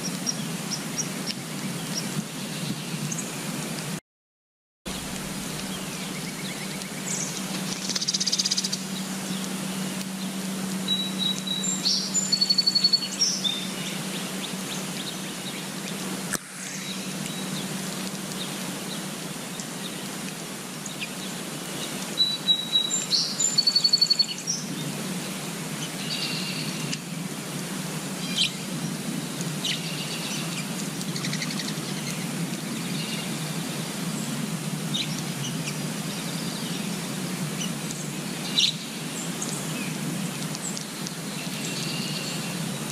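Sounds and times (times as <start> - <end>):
songbirds singing and chirping: 0.0 - 3.5, 4.9 - 27.1, 27.9 - 42.9
background hiss and low hum: 4.9 - 42.9.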